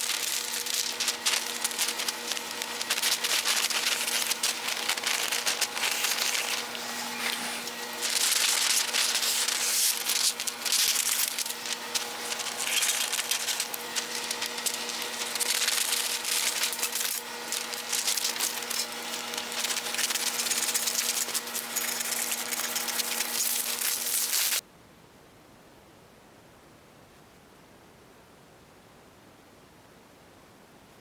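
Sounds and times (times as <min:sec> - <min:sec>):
scratchy hand rubbing or sanding: 0:00.0 - 0:24.6
steady electrical hum: 0:00.0 - 0:24.8.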